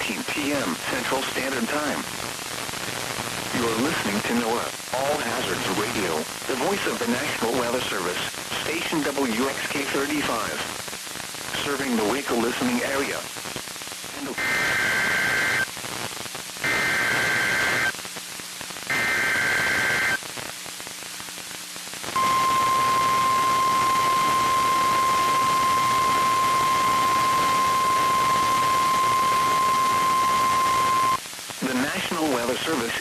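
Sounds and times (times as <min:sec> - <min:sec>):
radio static hiss: 0:00.0 - 0:33.0
screeching digital data tone: 0:22.2 - 0:31.2
steady warning alarm tone: 0:22.2 - 0:31.2.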